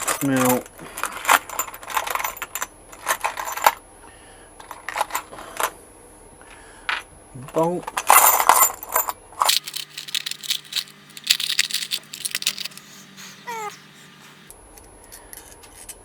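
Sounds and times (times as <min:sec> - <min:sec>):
metal parts clicking and tapping: 0:09.5 - 0:14.4.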